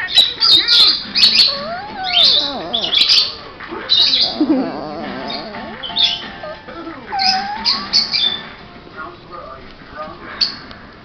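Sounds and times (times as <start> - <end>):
puppies yelping and whining: 0.0 - 8.6
faint tv sound: 0.0 - 11.0.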